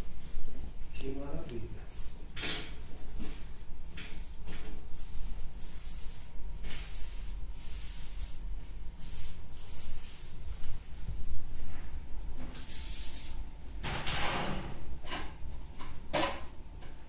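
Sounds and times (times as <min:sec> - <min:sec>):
short rustling hissing strokes: 0:01.9 - 0:11.2, 0:12.4 - 0:13.4.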